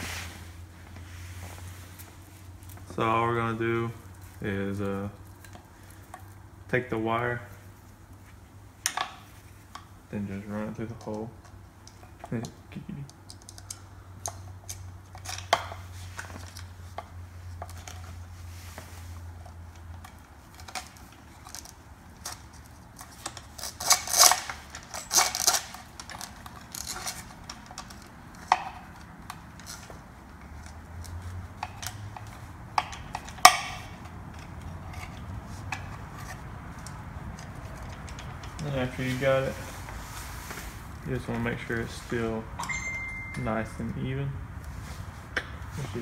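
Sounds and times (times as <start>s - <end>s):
small parts clicking on plastic: 13.0s - 15.7s.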